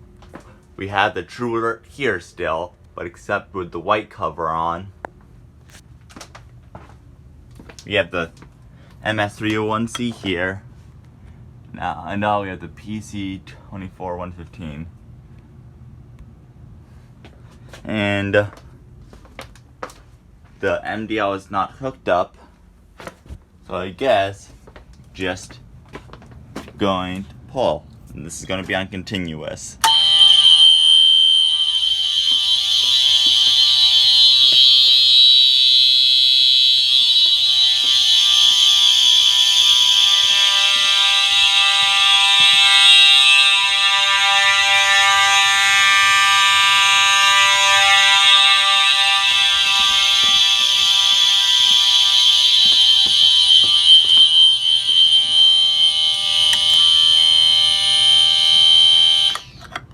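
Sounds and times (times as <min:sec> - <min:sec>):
fire alarm horns sounding: 0:29.8 - 0:59.8.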